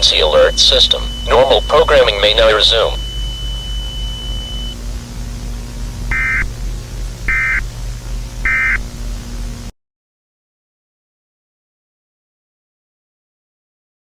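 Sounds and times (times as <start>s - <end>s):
warbling digital data tones: 0.0s - 4.8s, 5.7s - 9.1s
steady low hum: 0.0s - 9.7s.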